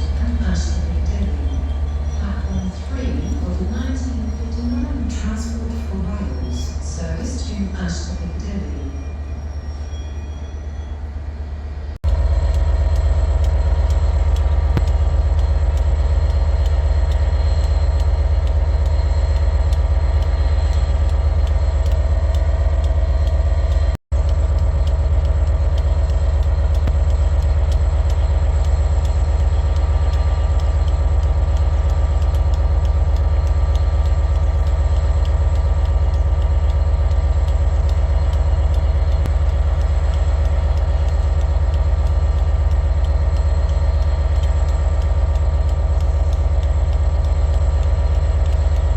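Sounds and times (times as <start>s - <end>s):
train diesel engine rumbling: 0.0s - 48.9s.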